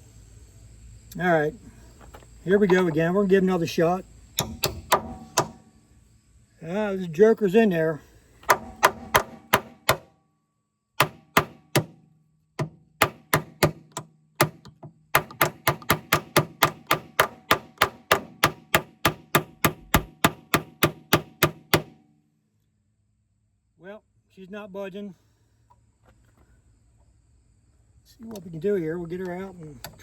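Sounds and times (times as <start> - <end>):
hammer striking metal tool: 4.4 - 5.7, 8.5 - 10.1, 11.0 - 12.0, 12.6 - 22.0.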